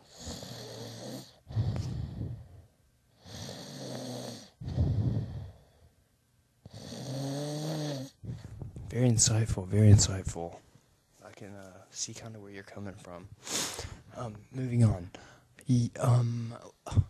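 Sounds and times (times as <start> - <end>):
man snoring loudly: 0.0 - 2.4, 3.2 - 5.6, 6.7 - 8.2.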